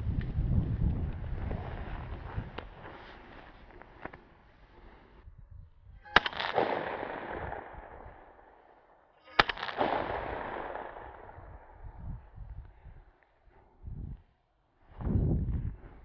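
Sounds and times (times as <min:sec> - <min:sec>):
shotgun shots with echo: 0:06.1 - 0:08.5, 0:09.3 - 0:11.9.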